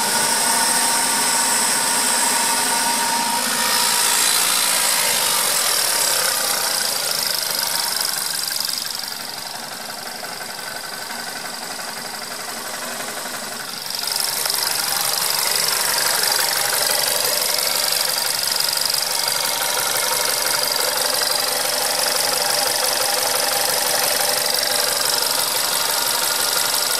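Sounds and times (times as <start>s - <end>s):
high engine whistle: 0.0s - 9.5s
car engine idling: 0.0s - 26.9s
engine rattle: 0.0s - 26.9s.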